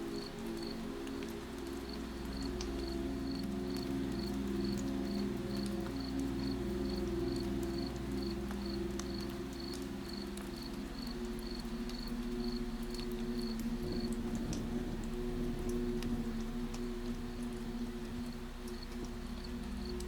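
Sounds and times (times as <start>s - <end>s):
faint drips: 0.0s - 20.0s
low steady hum: 0.0s - 20.0s
cricket chirping: 2.0s - 15.2s.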